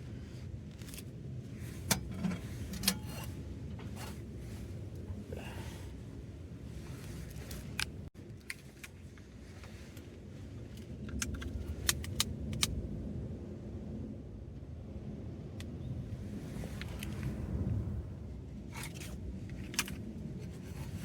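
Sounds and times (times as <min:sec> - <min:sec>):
stove low rumble: 0:00.0 - 0:08.2.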